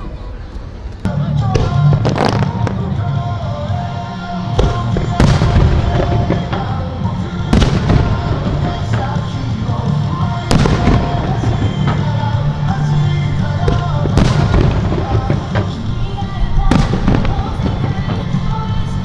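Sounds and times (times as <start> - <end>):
firework shells bursting: 4.1 - 18.8.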